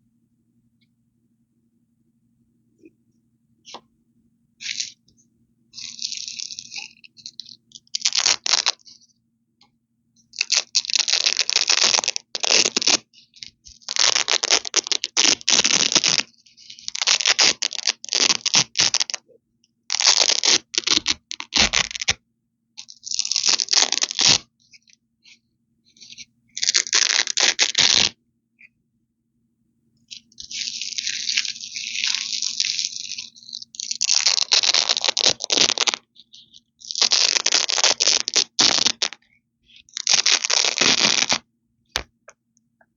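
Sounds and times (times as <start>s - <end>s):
velcro tape ripping: 5.8s - 8.9s, 10.4s - 19.2s, 19.9s - 22.2s, 22.8s - 24.5s, 26.0s - 28.1s, 30.1s - 39.2s, 39.9s - 41.4s.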